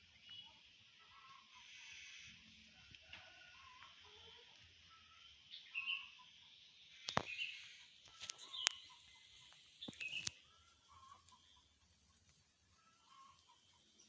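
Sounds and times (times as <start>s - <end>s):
birds chirping: 4.9s - 11.8s.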